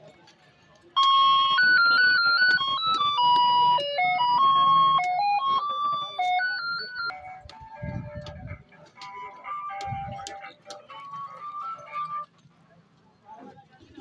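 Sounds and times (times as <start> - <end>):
electronic melody: 1.0 - 12.3.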